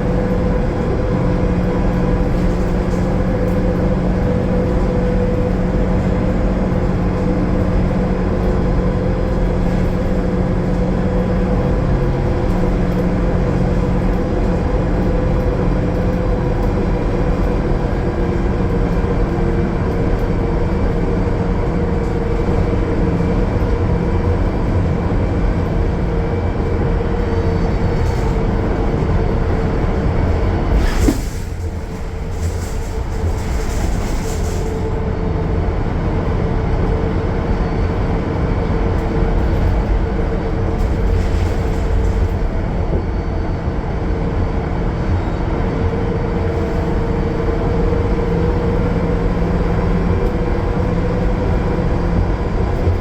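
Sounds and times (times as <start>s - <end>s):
bus diesel engine running: 0.0s - 53.0s.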